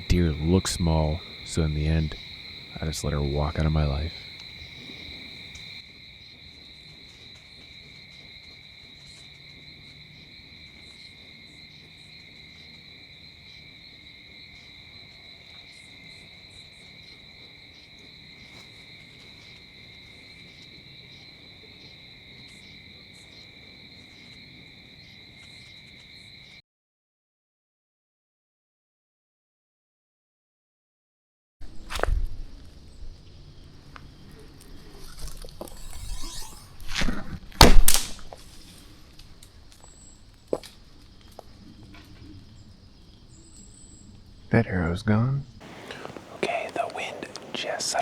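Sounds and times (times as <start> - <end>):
crickets trilling: 0.0 - 26.6, 31.6 - 48.0
faint ticks: 4.4 - 5.7, 45.6 - 48.0.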